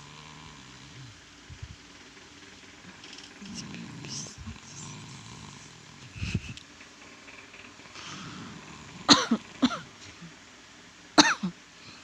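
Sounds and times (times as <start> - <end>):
person coughing: 9.1 - 10.3, 11.2 - 11.6.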